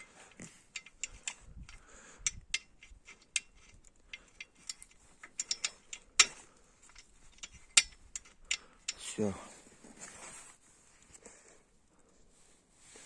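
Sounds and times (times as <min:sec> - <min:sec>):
small metallic clicks and taps: 0:00.0 - 0:09.0.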